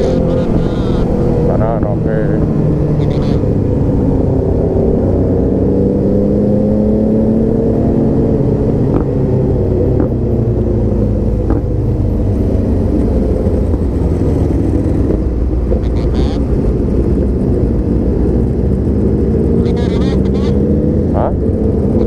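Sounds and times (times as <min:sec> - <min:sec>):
motorcycle engine running: 0:00.0 - 0:22.0
wind noise: 0:00.0 - 0:22.0.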